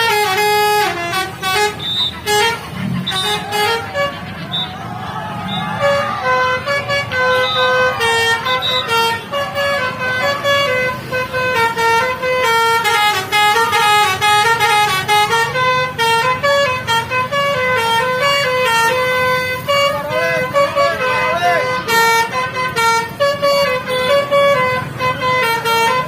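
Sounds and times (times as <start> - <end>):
bus horn playing a melody: 0.0 - 26.0.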